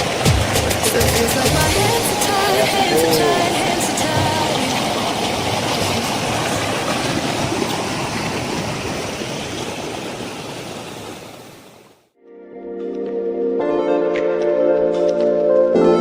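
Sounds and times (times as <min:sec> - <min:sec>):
waterfall rushing water: 0:00.0 - 0:12.0.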